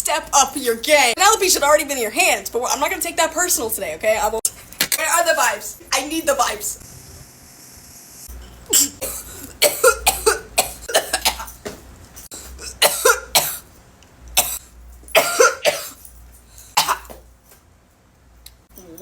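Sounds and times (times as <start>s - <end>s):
person coughing hard: 8.7s - 11.6s, 12.5s - 13.6s, 14.4s - 16.0s, 16.8s - 17.2s.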